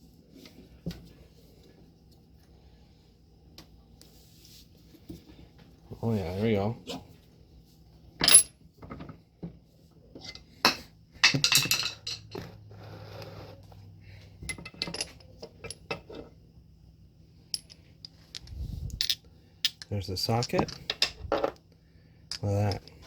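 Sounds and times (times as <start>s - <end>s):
metal sockets clinking: 17.6s - 21.2s.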